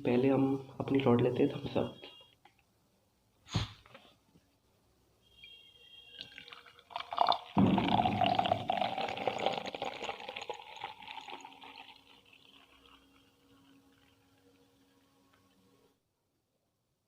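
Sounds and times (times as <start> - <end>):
cola being poured: 6.1 - 15.7.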